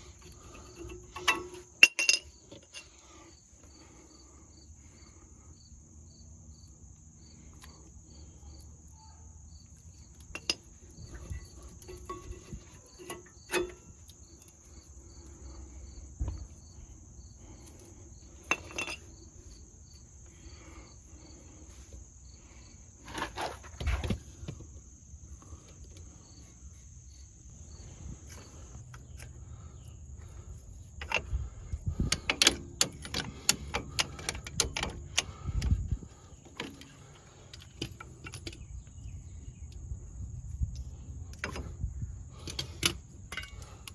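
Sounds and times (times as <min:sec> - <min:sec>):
crickets chirping: 0:00.0 - 0:43.9
metal tools clinking: 0:00.2 - 0:03.0, 0:10.0 - 0:14.6, 0:17.7 - 0:19.2.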